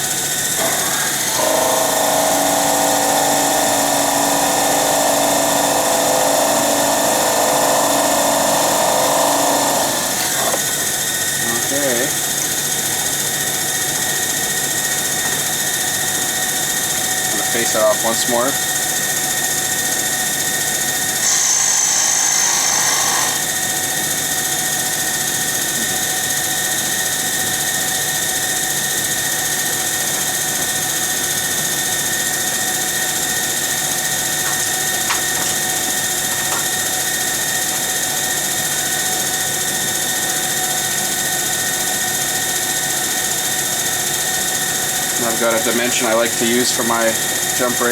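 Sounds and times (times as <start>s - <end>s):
cutting tool hissing cut: 0.0s - 12.5s, 21.0s - 23.9s, 29.6s - 43.5s, 44.6s - 47.9s
lathe whining: 0.0s - 12.8s, 15.1s - 47.9s.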